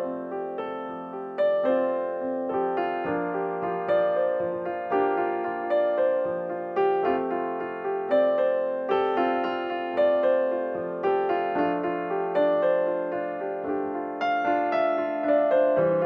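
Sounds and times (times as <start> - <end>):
calm piano-like keyboard chords: 0.0 - 16.0.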